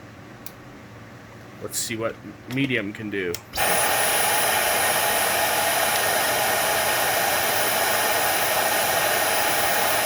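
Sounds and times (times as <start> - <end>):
vacuum cleaner running: 3.5 - 10.0.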